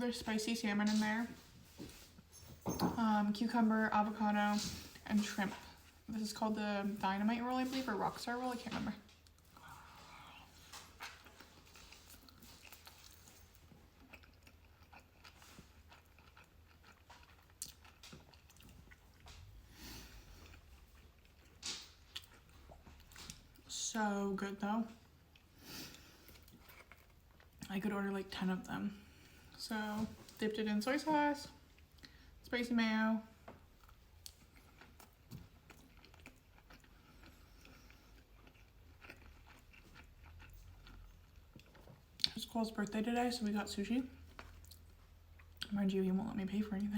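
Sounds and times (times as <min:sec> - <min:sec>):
chewing with wet mouth clicks: 0:10.8 - 0:19.5, 0:20.4 - 0:23.6, 0:33.8 - 0:42.4, 0:44.3 - 0:45.8.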